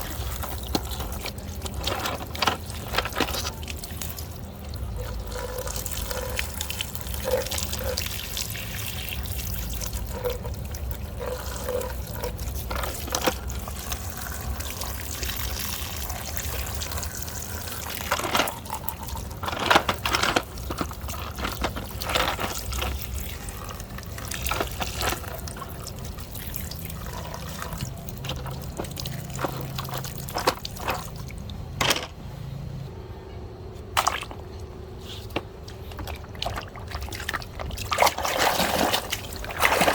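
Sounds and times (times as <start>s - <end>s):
water splashing and trickling: 0.0s - 31.7s, 35.4s - 39.9s
plastic toys clicking and knocking: 0.1s - 4.4s, 17.6s - 25.7s, 27.5s - 32.2s.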